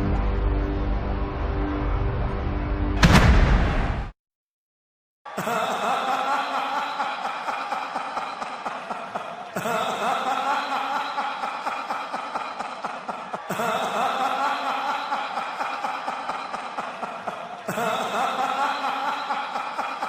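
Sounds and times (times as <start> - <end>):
processed laughing voice: 5.3 - 20.0.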